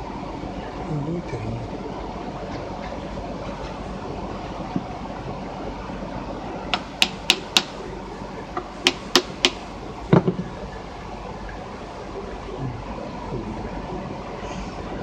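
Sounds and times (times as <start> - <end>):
steady low hum: 0.0 - 15.0
hand tools tapping metal: 6.8 - 7.8, 8.6 - 9.6
heavier knock: 8.8 - 10.4.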